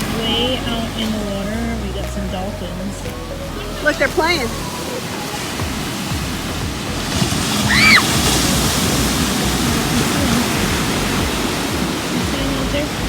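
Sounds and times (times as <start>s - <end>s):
ocean surf on beach: 0.0s - 13.0s.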